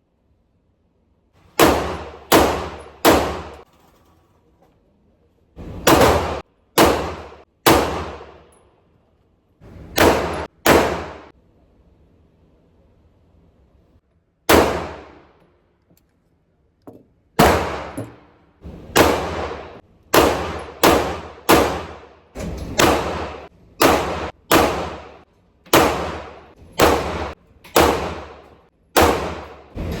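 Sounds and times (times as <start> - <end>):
pistol shots with ringing tail: 1.6 - 3.6, 5.8 - 8.4, 9.9 - 11.3, 14.5 - 15.2, 17.4 - 18.0, 18.9 - 22.1, 22.7 - 29.7.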